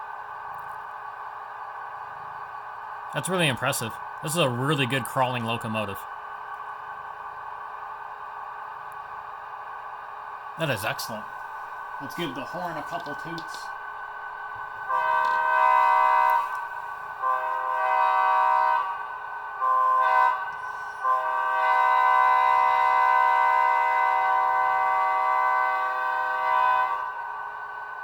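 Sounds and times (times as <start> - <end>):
model train air horn blasts: 14.8 - 27.3.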